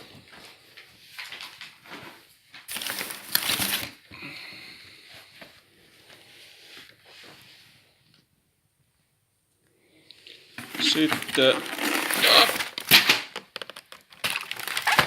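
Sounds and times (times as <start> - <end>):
packaging crinkling and rustling: 0.3 - 4.1, 10.6 - 15.0.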